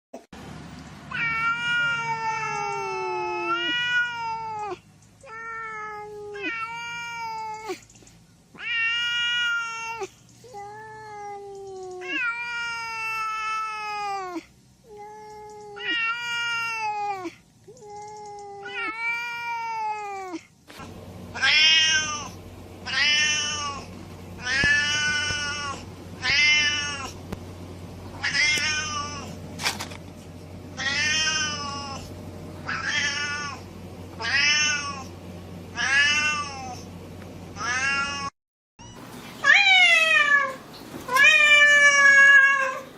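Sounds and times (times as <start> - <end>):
cat meowing: 1.1 - 7.8, 8.6 - 20.4, 21.4 - 27.2, 28.2 - 29.4, 30.8 - 32.0, 32.6 - 33.6, 37.6 - 38.3, 39.4 - 42.9.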